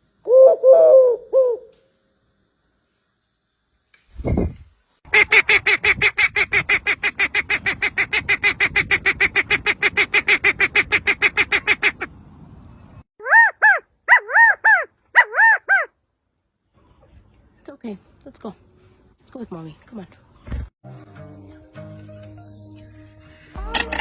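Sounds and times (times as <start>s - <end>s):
bird calling: 13.2s - 16.0s.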